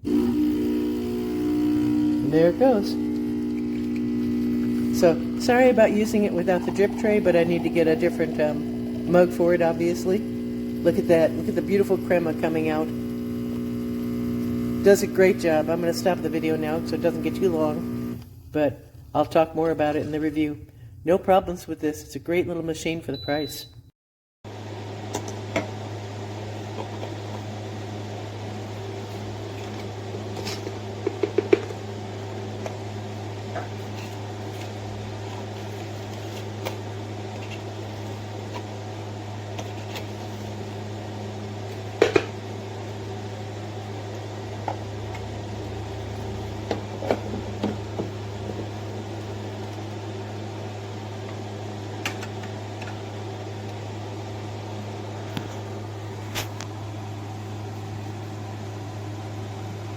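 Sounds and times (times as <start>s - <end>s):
espresso machine pump humming: 0.0s - 18.3s, 31.3s - 57.0s.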